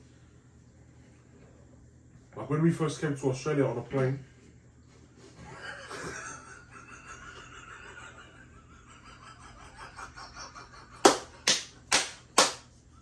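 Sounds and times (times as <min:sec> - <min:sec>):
loud sharp smacks: 0:11.1 - 0:12.6.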